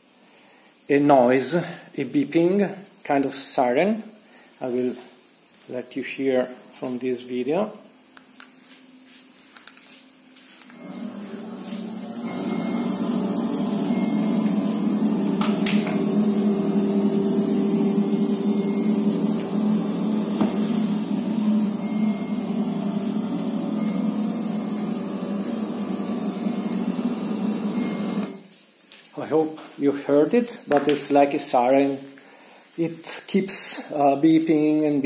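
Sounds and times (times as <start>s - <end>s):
projector fan humming: 10.6s - 28.4s
faint siren-like beeping: 12.3s - 13.1s, 13.7s - 15.1s, 16.8s - 19.9s, 21.7s - 24.5s.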